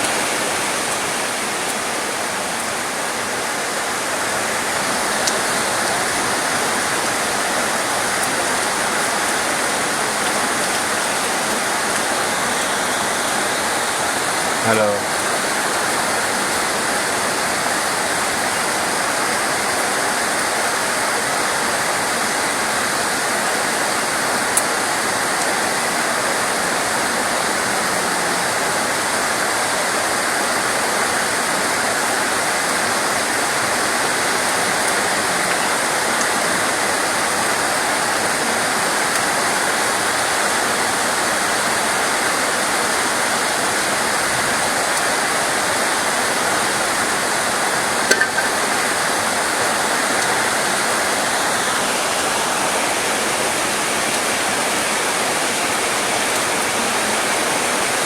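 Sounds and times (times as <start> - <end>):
rain falling steadily: 0.0 - 58.0.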